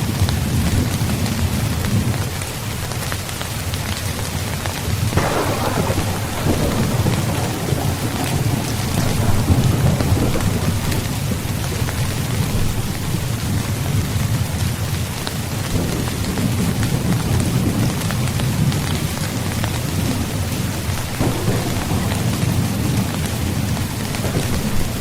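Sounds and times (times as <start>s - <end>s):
heavy rain: 0.0s - 25.0s
low rolling thunder: 5.0s - 25.0s
sharp thunderclap: 5.1s - 13.3s, 15.7s - 25.0s.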